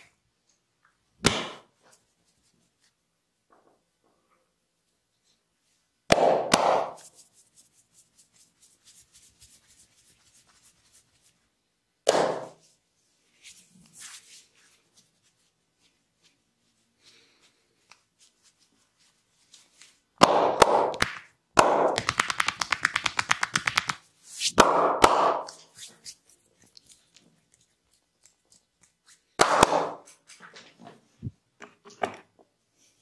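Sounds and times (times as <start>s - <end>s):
hands slapping body: 1.2s - 1.7s, 6.1s - 7.2s, 12.1s - 12.6s, 20.2s - 26.2s, 29.4s - 30.1s.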